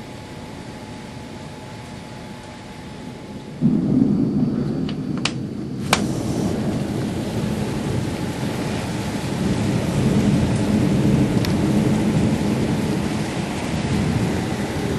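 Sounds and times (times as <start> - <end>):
rain: 0.0 - 14.9
thunder rumbling: 3.3 - 14.9
sharp thunder cracks: 3.6 - 14.9.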